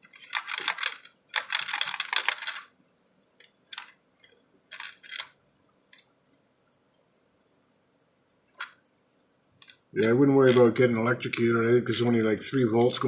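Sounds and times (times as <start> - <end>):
small hard objects clicking: 0.0 - 2.7, 3.4 - 6.1, 9.6 - 10.7.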